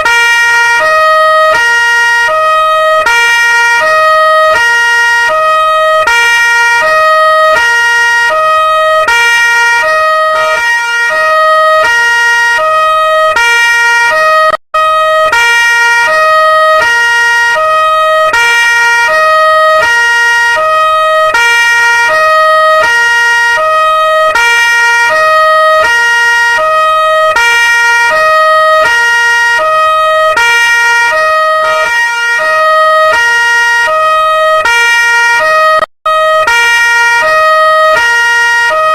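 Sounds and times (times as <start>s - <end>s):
police siren two-tone wail: 0.0s - 38.9s.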